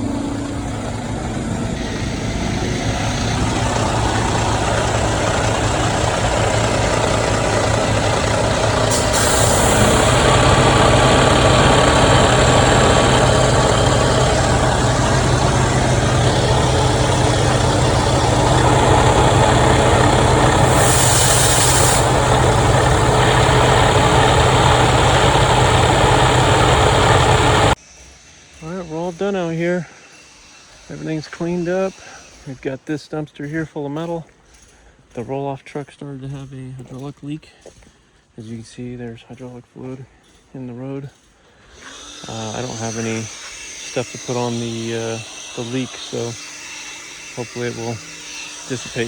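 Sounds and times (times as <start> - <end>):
diesel engine running: 0.0 - 27.8, 48.7 - 49.0
short hisses: 8.0 - 15.2, 16.8 - 24.1.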